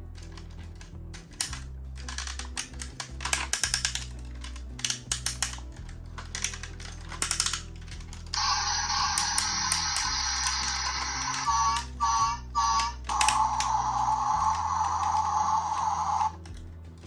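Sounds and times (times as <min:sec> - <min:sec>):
steady low hum: 0:00.0 - 0:17.0
toy cars clattering on plastic track: 0:00.2 - 0:11.9.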